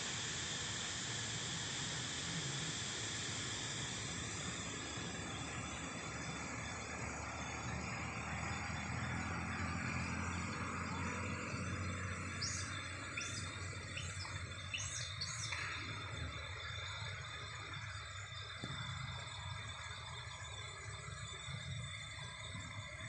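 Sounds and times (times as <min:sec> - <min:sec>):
insects hissing: 0:00.0 - 0:23.0
bird chirping: 0:10.0 - 0:17.0.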